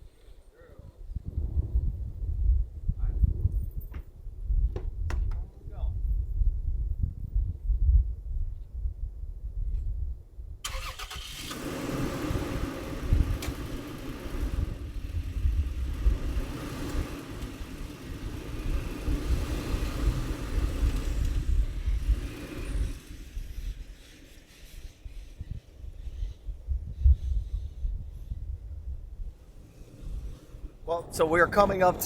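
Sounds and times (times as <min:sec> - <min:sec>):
low rumble: 0:00.9 - 0:05.1, 0:26.7 - 0:32.0
engine clatter: 0:10.7 - 0:24.4
truck engine running: 0:11.5 - 0:23.8.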